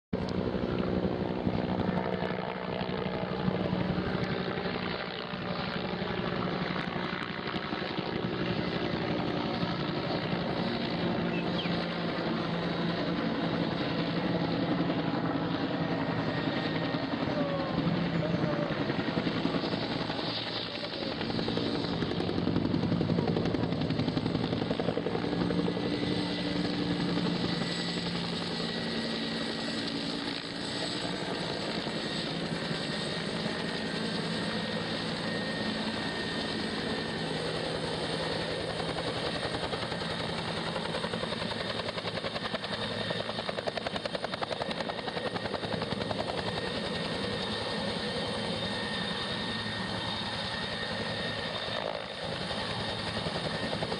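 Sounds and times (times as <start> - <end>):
helicopter rotor beating: 0.2 - 53.9.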